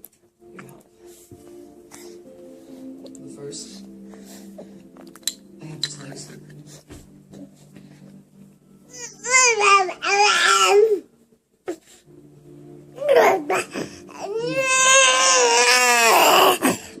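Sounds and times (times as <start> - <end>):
baby crying: 8.9 - 11.1, 13.0 - 16.9.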